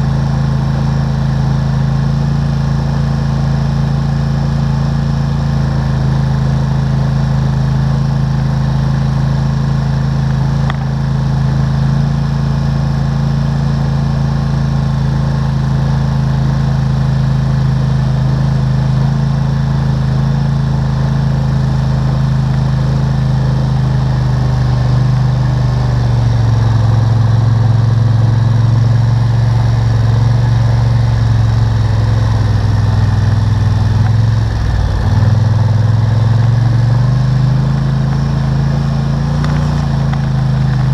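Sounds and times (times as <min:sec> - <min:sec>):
atv engine running: 0:00.0 - 0:40.9.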